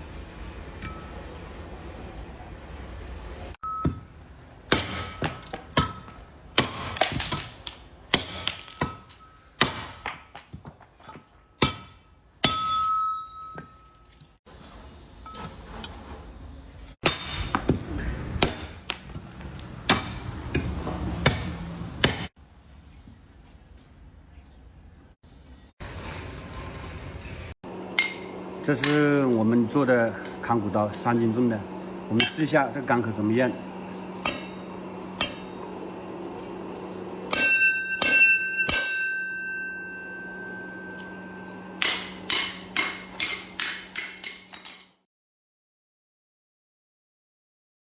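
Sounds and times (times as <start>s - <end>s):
hammer striking steel: 3.6s - 10.4s, 11.0s - 14.0s, 17.0s - 17.8s, 18.4s - 19.1s, 19.9s - 22.3s, 27.8s - 29.3s, 32.2s - 32.6s, 33.9s - 35.7s, 37.1s - 45.0s.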